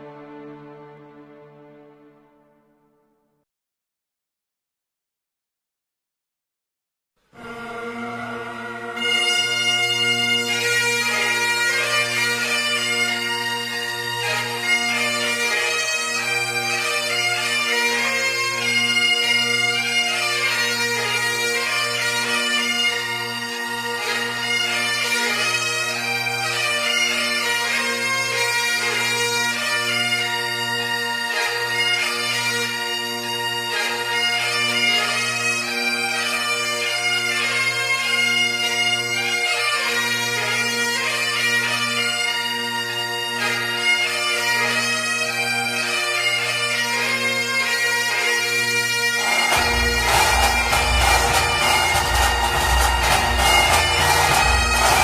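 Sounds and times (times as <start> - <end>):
bagpipe melody with drones: 0.0 - 2.7, 7.4 - 55.0
heavy low drum beats: 49.2 - 55.0.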